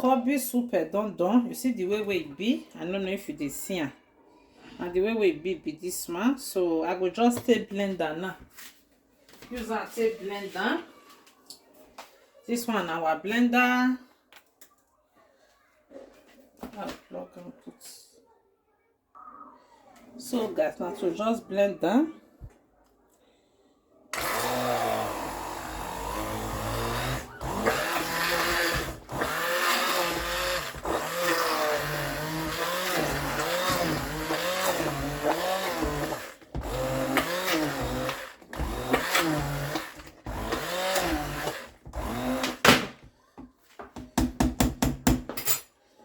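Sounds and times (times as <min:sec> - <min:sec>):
electric blender running: 0:24.2 - 0:42.7.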